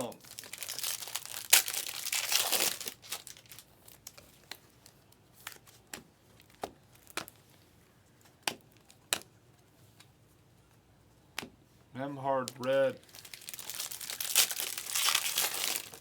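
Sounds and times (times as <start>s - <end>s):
foil wrapper crinkling and tearing: 0.0s - 5.6s, 12.4s - 16.0s
cards snapping: 5.4s - 7.4s, 8.2s - 9.3s.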